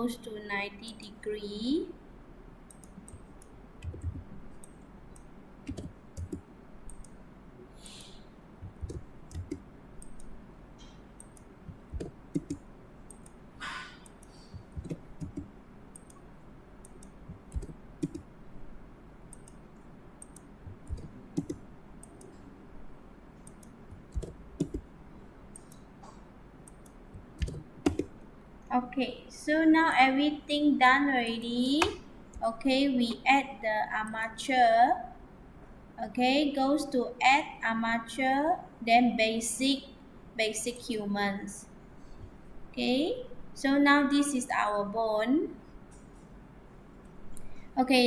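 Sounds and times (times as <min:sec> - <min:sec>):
low steady hiss: 0:00.0 - 0:48.0
mouse and keyboard clicks: 0:02.7 - 0:07.2, 0:07.8 - 0:16.2, 0:16.8 - 0:18.3, 0:20.2 - 0:22.4, 0:23.4 - 0:24.9, 0:25.5 - 0:28.2, 0:31.3 - 0:33.2.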